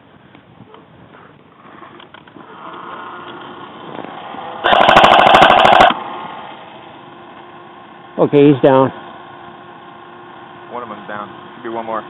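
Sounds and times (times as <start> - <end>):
airsoft gun full-auto burst: 4.6 - 6.0.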